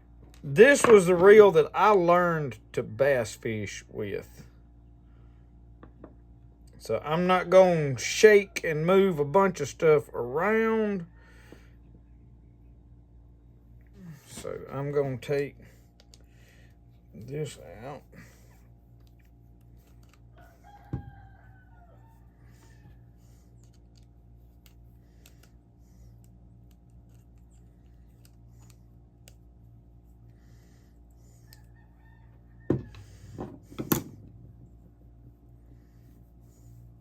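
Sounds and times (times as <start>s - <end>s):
steady low hum: 0.0s - 37.0s
reel parts clicking and knocking: 19.0s - 21.1s
rooster crowing: 20.3s - 23.3s, 31.4s - 33.4s.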